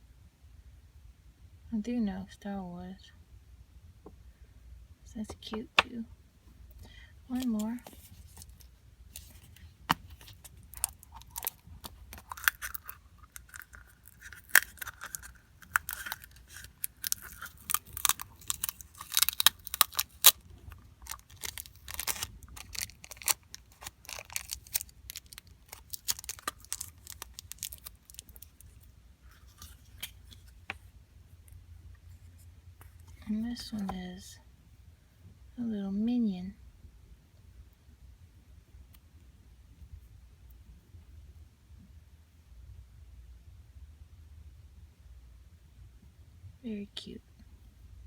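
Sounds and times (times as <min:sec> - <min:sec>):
wrapper crinkling and tearing: 0:07.3 - 0:30.5
plastic capsule clicks: 0:09.2 - 0:20.4, 0:21.0 - 0:28.5.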